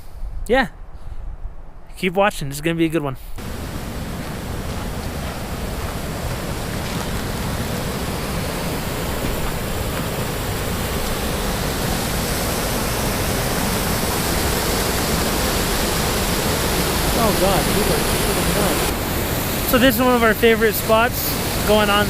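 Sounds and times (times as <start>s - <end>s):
river water rushing: 3.4s - 22.0s.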